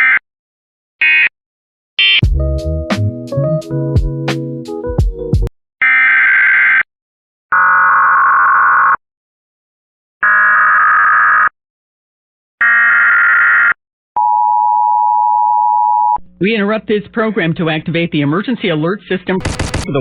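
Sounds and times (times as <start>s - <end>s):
music: 2.2s - 5.5s
harsh buzzing data bursts: 19.4s - 20.0s.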